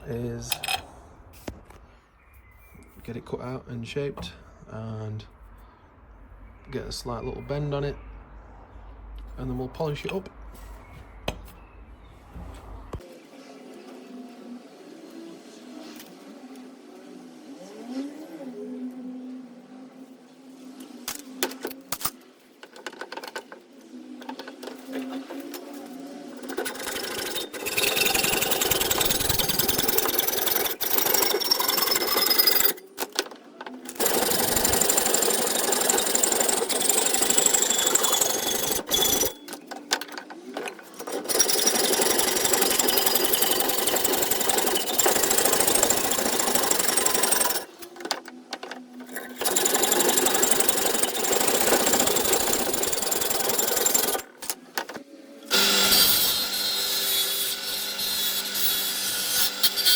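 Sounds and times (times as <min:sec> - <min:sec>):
power tool cutting metal: 0:24.2 - 0:39.7, 0:40.5 - 0:47.8, 0:49.1 - 0:54.3, 0:55.5 - 0:59.9.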